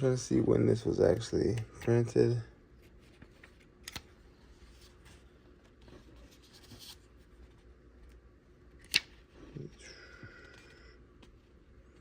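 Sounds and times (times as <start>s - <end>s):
book pages rustling: 2.8s - 8.2s.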